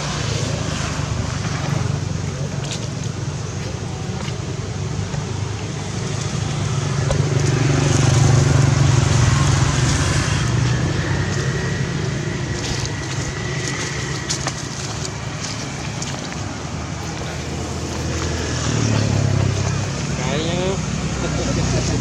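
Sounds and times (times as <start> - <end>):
vehicle driving past: 5.8 - 22.0.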